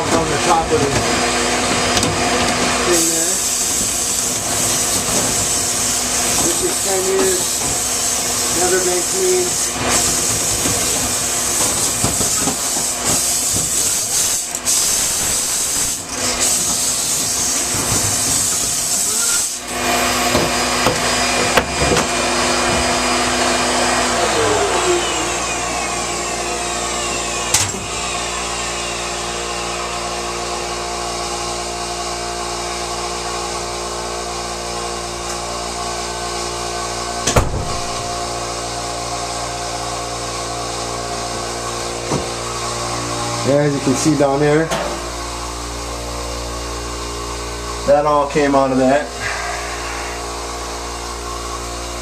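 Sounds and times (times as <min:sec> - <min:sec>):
machine motor hum: 0:00.0 - 0:47.9, 0:49.1 - 0:52.0
falling whine: 0:17.0 - 0:30.4, 0:49.1 - 0:52.0.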